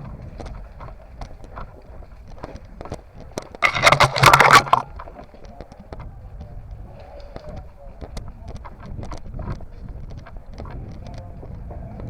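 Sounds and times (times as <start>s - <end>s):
branches scraping microphone: 3.6s - 4.9s.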